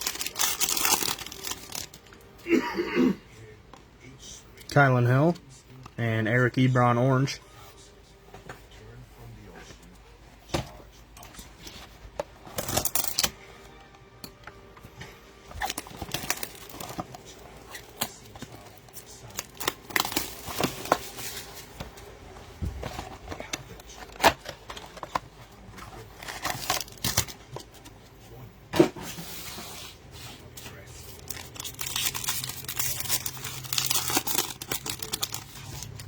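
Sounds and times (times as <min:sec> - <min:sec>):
card packs tearing and crinkling: 0:00.0 - 0:02.6, 0:11.3 - 0:13.4, 0:15.4 - 0:21.9, 0:22.8 - 0:28.0, 0:28.8 - 0:36.0.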